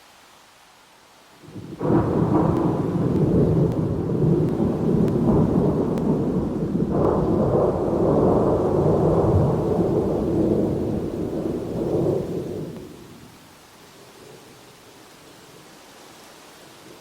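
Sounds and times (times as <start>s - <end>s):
faint hiss: 0.0s - 17.0s
thunder rumbling: 1.4s - 13.5s.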